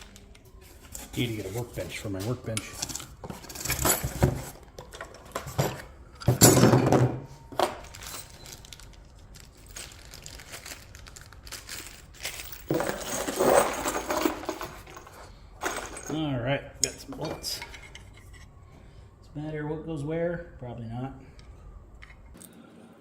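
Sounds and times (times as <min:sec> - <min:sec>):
metal bolts clinking and rattling: 0:02.6 - 0:07.1, 0:11.5 - 0:18.4.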